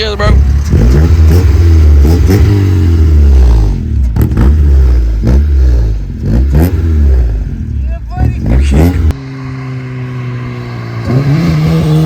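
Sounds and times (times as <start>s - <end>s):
car engine revving: 0.0s - 12.0s.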